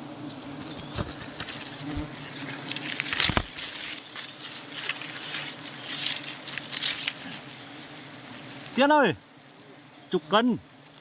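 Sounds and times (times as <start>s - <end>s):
bees humming: 0.0s - 11.0s
high insect tone: 0.0s - 11.0s
crackling and rustling: 0.3s - 8.8s.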